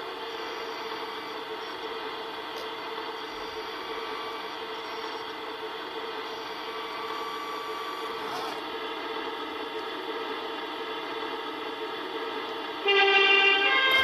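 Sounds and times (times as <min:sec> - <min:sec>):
two-tone siren: 0:06.3 - 0:08.5, 0:12.8 - 0:14.0.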